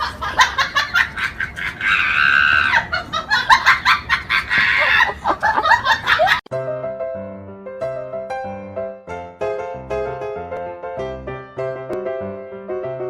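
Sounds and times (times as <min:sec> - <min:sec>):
piano music: 0:06.5 - 0:13.0.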